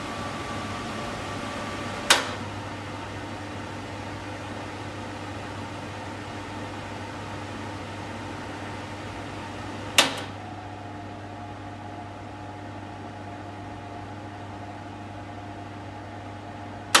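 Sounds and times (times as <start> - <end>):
extractor fan humming: 0.0 - 12.0
sharp click: 2.1 - 2.4, 9.9 - 10.4.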